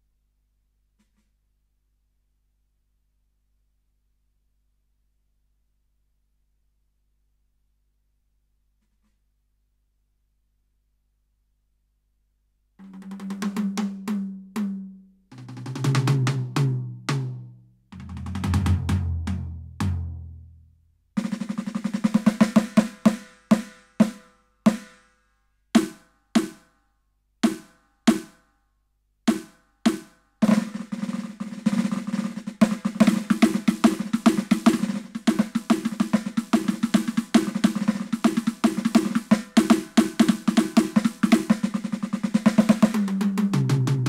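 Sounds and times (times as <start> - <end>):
electronic snare drum hits: 32.6 - 44.0.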